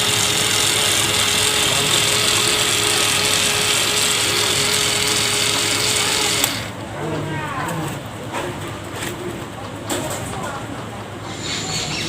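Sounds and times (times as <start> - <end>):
small electric motor whirring: 0.0 - 6.7.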